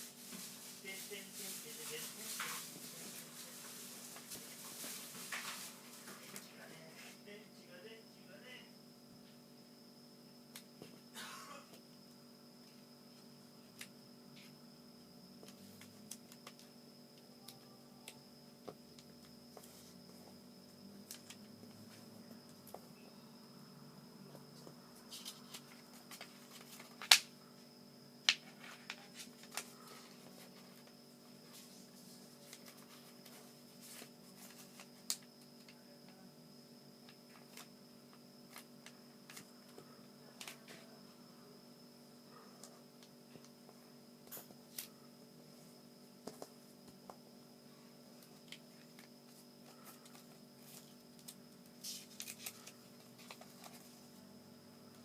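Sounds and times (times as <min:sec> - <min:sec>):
low hum with high whine: 0:00.0 - 0:55.0
paper folding clicks and rustles: 0:25.1 - 0:27.3, 0:28.3 - 0:31.0, 0:32.4 - 0:35.7, 0:48.2 - 0:54.0.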